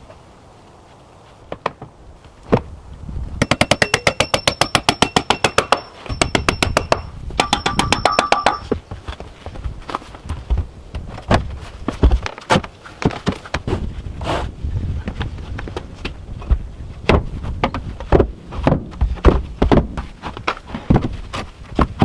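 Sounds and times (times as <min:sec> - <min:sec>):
faint ringing tone: 0:03.4 - 0:08.8
knocks: 0:03.4 - 0:08.8.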